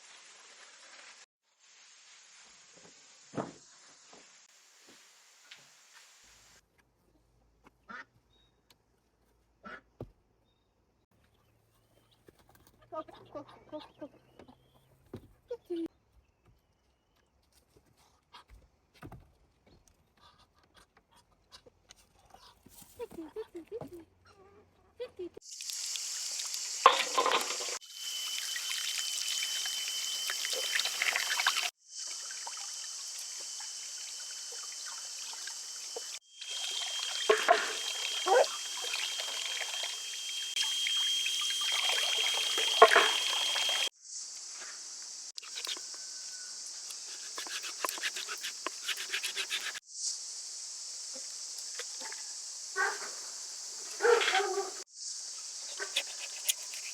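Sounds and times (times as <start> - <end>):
water splashes: 25.5 - 43.9
water trickling and pouring: 25.5 - 43.9.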